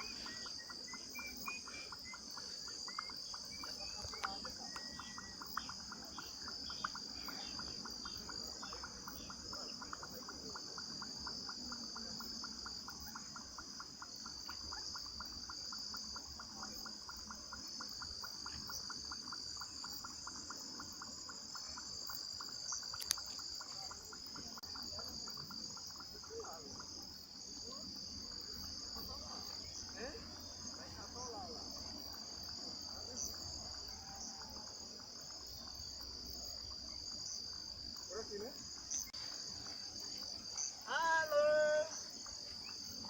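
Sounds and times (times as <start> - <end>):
crickets trilling: 0.0 - 43.0
rapid pulsing insect call: 0.0 - 43.0.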